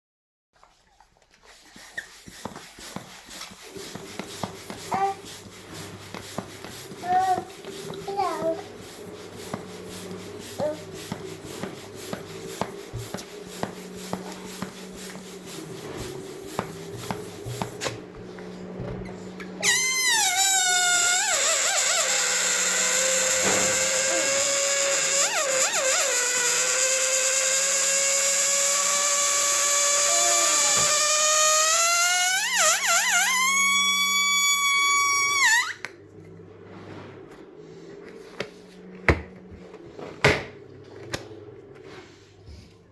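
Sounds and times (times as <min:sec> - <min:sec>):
balloon air release squeal: 0:19.6 - 0:35.9.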